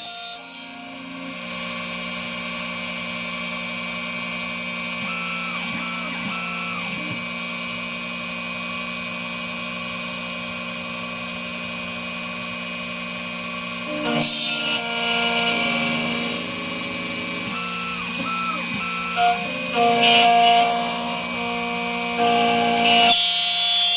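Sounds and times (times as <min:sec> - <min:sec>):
key cutting machine motor hum: 0:00.0 - 0:23.9
cutter grinding key blank: 0:13.8 - 0:23.9.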